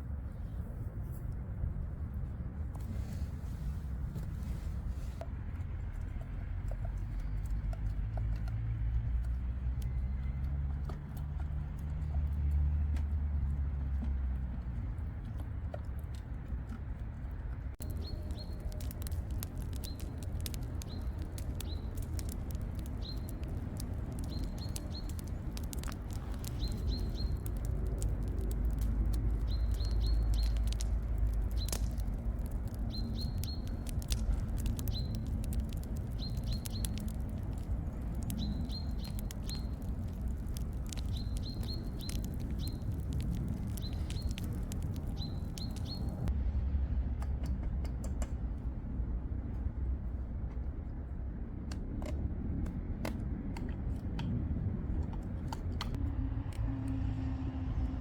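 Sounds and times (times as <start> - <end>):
sharp crackles: 2.7 - 46.3
low rumble: 16.4 - 58.0
small bird chirping: 17.8 - 27.7, 29.4 - 32.1, 32.7 - 46.3.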